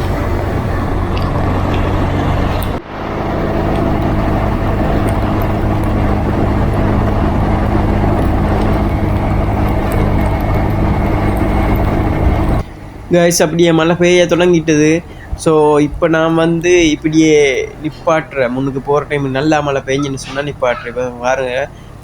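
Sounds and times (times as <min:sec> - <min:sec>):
motorcycle engine running: 0:00.0 - 0:12.8
wind rush on microphone: 0:00.0 - 0:13.0.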